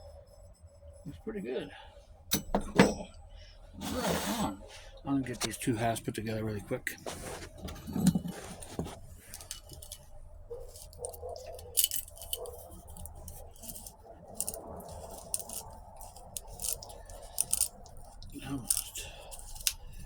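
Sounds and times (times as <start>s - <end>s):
faint steady hum: 0.0s - 20.0s
metal parts clicking and clinking: 7.8s - 20.0s.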